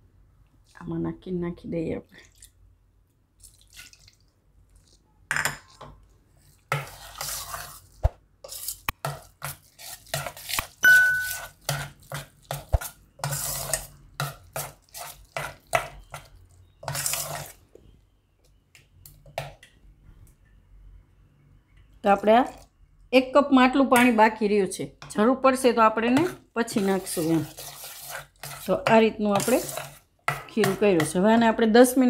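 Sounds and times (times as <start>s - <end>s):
spoon scraping a bowl: 5.6s - 17.6s, 26.0s - 31.2s
ringing clink: 10.8s - 11.4s.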